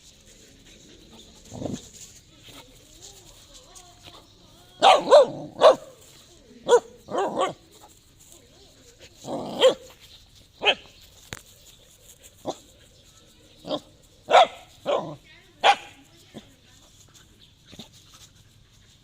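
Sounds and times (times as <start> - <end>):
dog barking: 4.8 - 5.9, 6.7 - 7.6, 9.5 - 9.8, 13.7 - 16.0.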